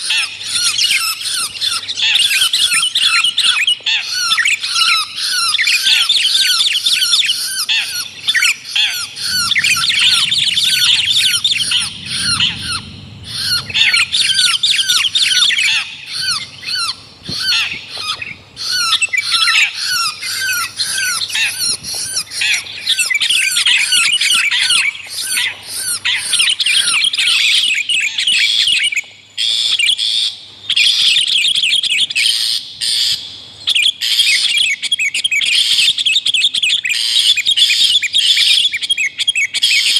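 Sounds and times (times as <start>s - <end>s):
birds calling rapid high notes: 8.6s - 24.2s.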